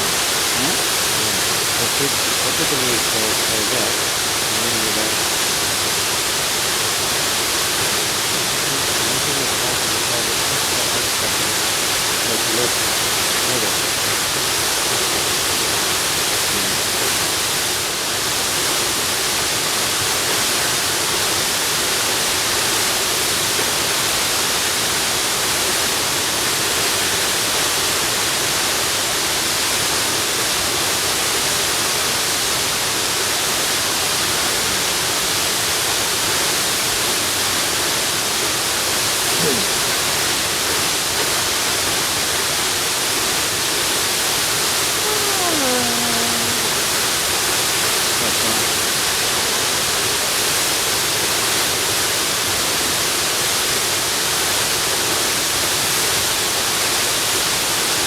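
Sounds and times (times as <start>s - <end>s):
waterfall rushing: 0.0s - 26.5s.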